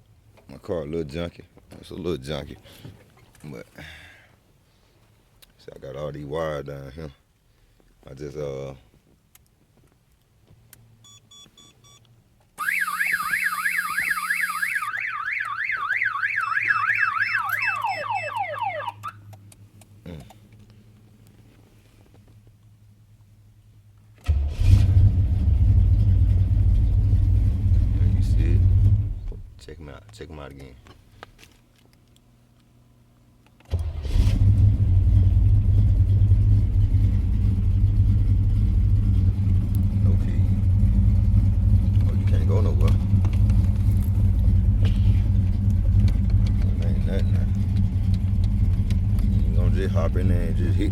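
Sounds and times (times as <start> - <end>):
short electronic beeps: 11.0 - 12.0
car alarm siren wailing: 12.6 - 19.3
car engine starting and running: 24.2 - 29.7, 33.6 - 50.9.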